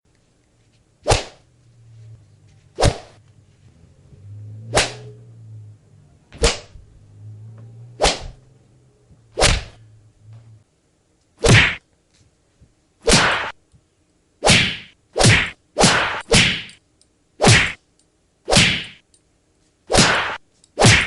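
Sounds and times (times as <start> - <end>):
sharp punch and slap hits: 1.0 - 1.4, 2.8 - 3.2, 4.7 - 5.0, 6.4 - 6.8, 8.0 - 8.4, 9.4 - 9.8, 11.4 - 11.8, 13.0 - 13.6, 14.4 - 16.8, 17.4 - 17.8, 18.5 - 19.0, 19.9 - 21.0
faint low drone: 1.5 - 10.7.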